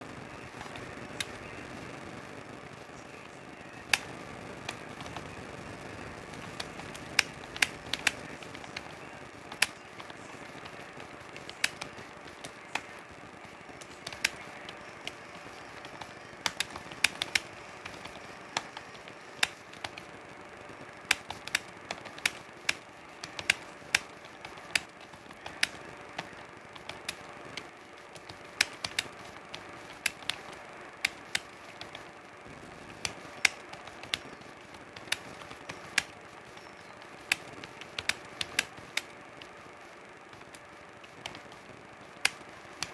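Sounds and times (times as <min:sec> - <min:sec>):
faint hiss and hum: 0:00.0 - 0:42.9
keyboard key clicks: 0:06.3 - 0:13.0, 0:13.8 - 0:20.1, 0:21.0 - 0:32.1, 0:32.9 - 0:39.5.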